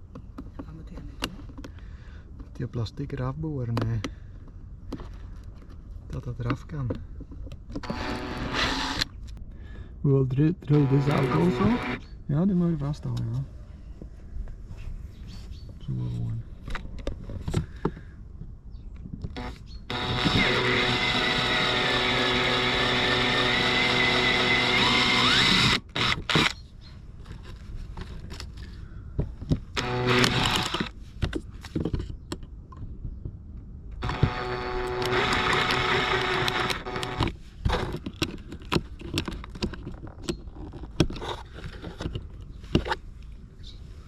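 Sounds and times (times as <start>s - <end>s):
electric drill drilling plastic: 7.8s - 9.1s, 10.7s - 12.0s, 19.3s - 26.6s, 29.7s - 31.0s, 34.0s - 37.3s
clicks and handling knocks: 27.2s - 43.0s.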